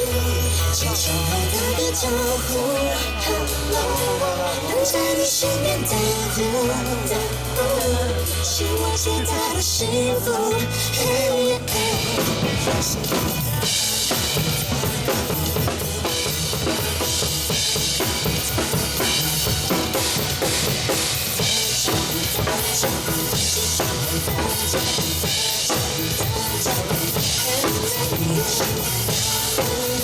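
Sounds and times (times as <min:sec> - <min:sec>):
pop band backing music: 0:00.0 - 0:30.0
drum kit steady beat: 0:11.0 - 0:30.0.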